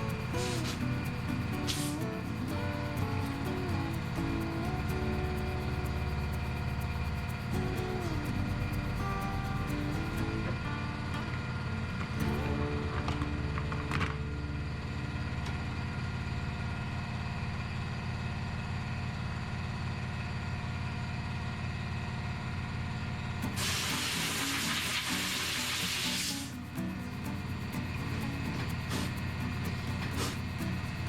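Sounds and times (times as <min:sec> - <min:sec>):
compressed air hissing: 0:00.0 - 0:09.0, 0:23.4 - 0:31.0
low machine hum: 0:00.0 - 0:25.7, 0:26.3 - 0:31.0.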